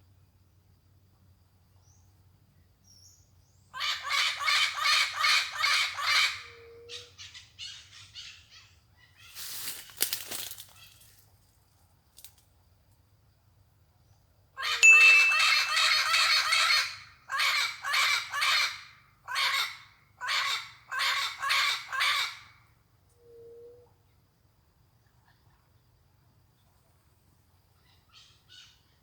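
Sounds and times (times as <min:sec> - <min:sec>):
parrot squawking: 0:14.6 - 0:18.2.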